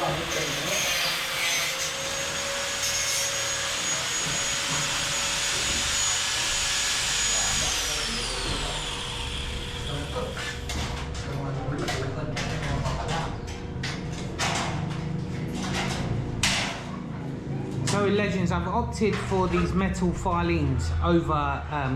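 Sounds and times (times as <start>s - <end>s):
angle grinder cutting metal: 0.0s - 10.7s.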